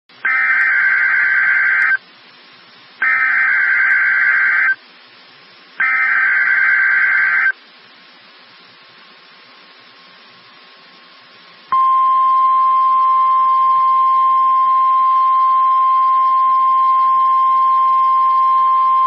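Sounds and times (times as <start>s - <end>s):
radio hiss: 0.2s - 11.8s
digital data screech: 5.8s - 7.6s.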